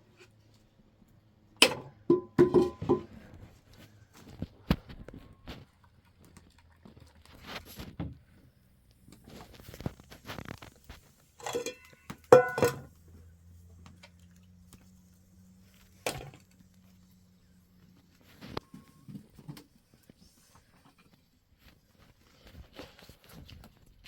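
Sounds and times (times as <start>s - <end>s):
objects knocking and thudding: 1.6s - 3.5s, 11.4s - 12.9s.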